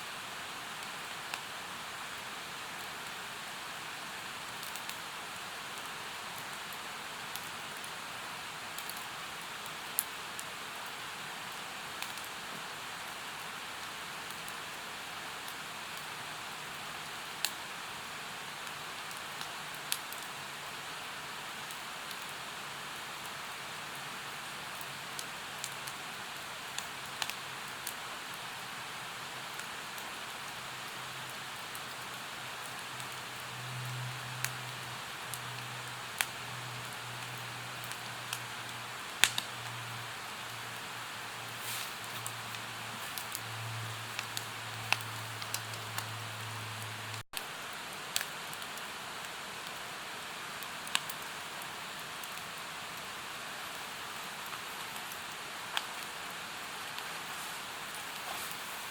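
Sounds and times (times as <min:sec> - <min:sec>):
campfire crackling and popping: 0:04.5 - 0:08.0, 0:08.7 - 0:49.8, 0:50.5 - 0:52.9, 0:53.7 - 0:58.9
mountain stream rushing: 0:54.8 - 0:58.9.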